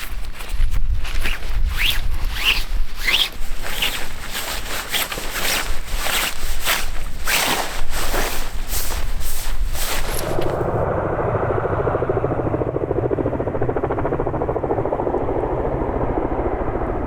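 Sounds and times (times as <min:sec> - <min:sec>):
zipper being drawn: 0:00.0 - 0:10.8.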